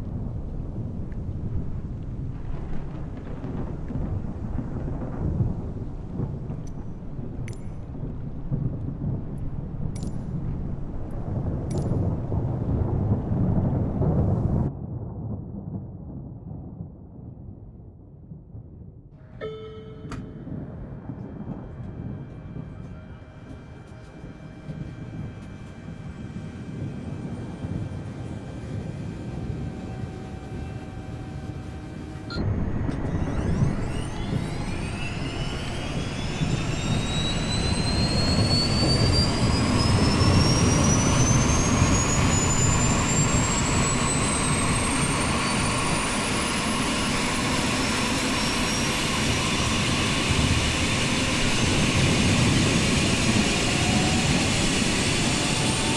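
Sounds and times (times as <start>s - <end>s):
helicopter turbine engine: 9.0s - 12.2s, 19.2s - 55.9s
broad rumble: 19.2s - 55.9s
high turbine whine: 19.2s - 55.9s.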